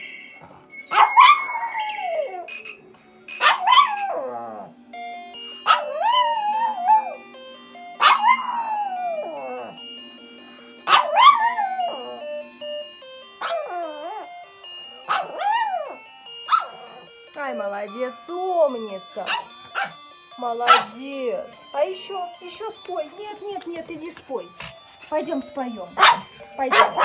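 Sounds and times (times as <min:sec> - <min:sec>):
alarm clock electronic melody: 0:00.0 - 0:27.0
dog howling: 0:00.8 - 0:02.5, 0:05.7 - 0:07.2, 0:08.0 - 0:09.8, 0:10.9 - 0:12.3, 0:13.4 - 0:14.3, 0:15.0 - 0:17.1, 0:26.0 - 0:27.0.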